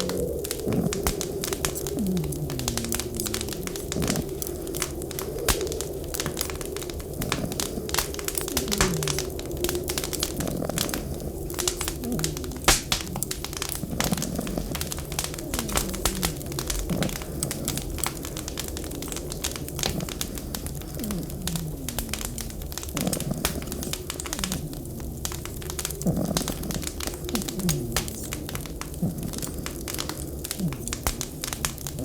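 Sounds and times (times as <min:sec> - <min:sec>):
steady low rumble: 0:00.0 - 0:32.0
wood fire crackling: 0:00.0 - 0:32.0.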